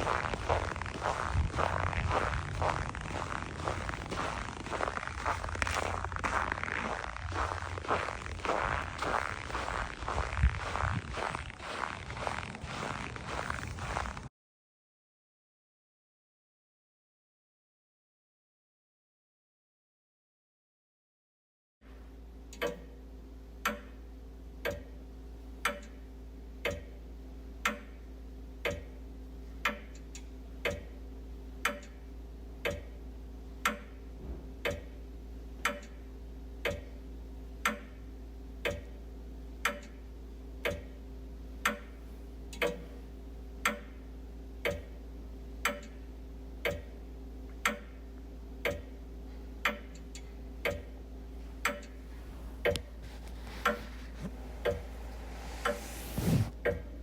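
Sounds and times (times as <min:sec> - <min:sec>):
low hum: 0:00.0 - 0:14.3, 0:51.0 - 0:56.6
wall clock ticking: 0:24.6 - 0:24.9, 0:26.6 - 0:26.9, 0:28.6 - 0:28.9, 0:29.6 - 0:31.0, 0:32.6 - 0:33.0, 0:34.6 - 0:34.9, 0:35.6 - 0:36.0, 0:36.6 - 0:36.9, 0:38.6 - 0:39.0, 0:39.6 - 0:40.0, 0:40.6 - 0:41.0, 0:44.6 - 0:45.0, 0:45.6 - 0:46.0, 0:46.6 - 0:47.0, 0:47.6 - 0:48.0, 0:48.6 - 0:49.0, 0:49.6 - 0:51.0, 0:51.6 - 0:52.9.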